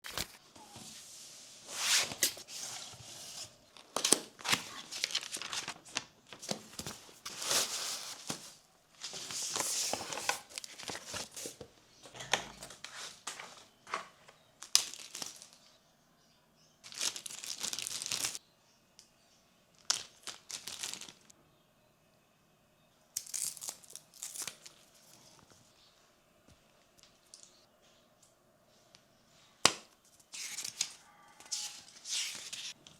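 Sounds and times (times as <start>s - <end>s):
packaging tearing and crinkling: 14.6s - 15.6s, 16.9s - 18.4s.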